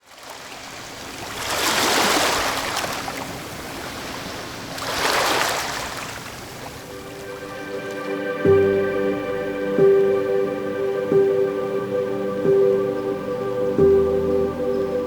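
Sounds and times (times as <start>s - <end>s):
sea waves washing in: 0.1s - 15.0s.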